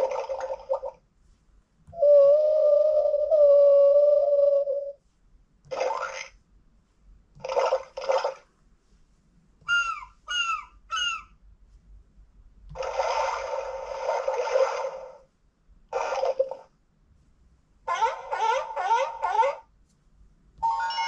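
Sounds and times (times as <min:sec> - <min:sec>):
calls falling in pitch: 0:09.7 - 0:11.3, 0:17.9 - 0:19.6
rushing water-like sound: 0:12.8 - 0:15.2.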